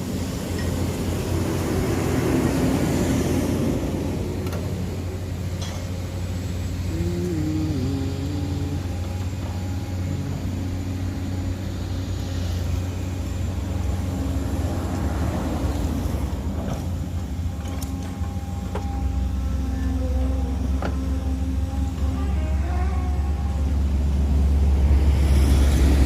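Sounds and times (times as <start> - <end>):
engine humming: 0.0 - 26.0
faint wavering tones: 6.4 - 14.0.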